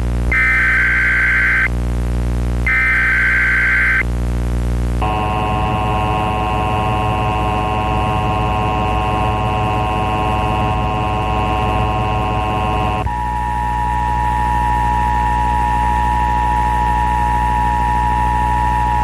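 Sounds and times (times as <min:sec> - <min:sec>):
harsh electric alert buzz: 0:00.3 - 0:01.7, 0:02.7 - 0:04.0, 0:05.0 - 0:13.2
low hum: 0:04.9 - 0:19.0.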